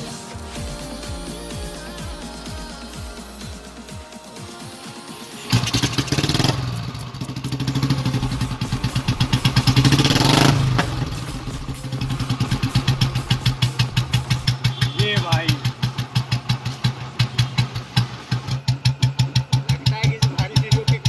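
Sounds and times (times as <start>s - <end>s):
motorcycle engine starting and revving: 0.0s - 21.0s
thumping engine idle: 5.5s - 21.0s.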